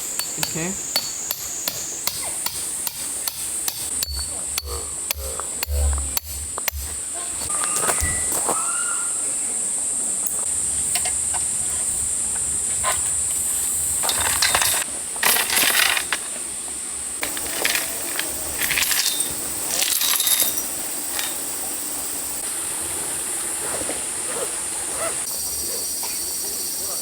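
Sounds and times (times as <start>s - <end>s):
high-pitched buzz: 4.2s - 7.1s
metallic clinking and rattling: 14.0s - 16.4s, 17.2s - 21.9s.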